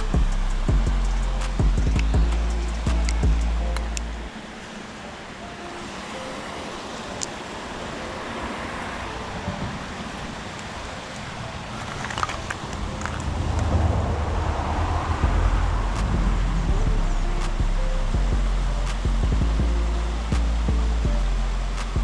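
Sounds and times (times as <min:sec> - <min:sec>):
faint background music: 0:00.0 - 0:22.0
passing cars: 0:00.0 - 0:22.0.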